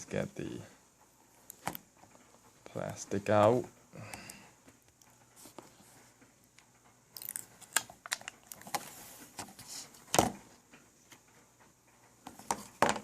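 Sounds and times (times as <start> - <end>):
plastic clicks and snaps: 6.5 - 8.8.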